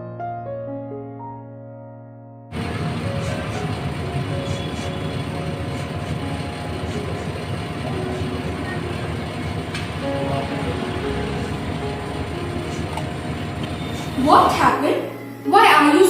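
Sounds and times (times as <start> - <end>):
low vehicle rumble: 2.6 - 14.6.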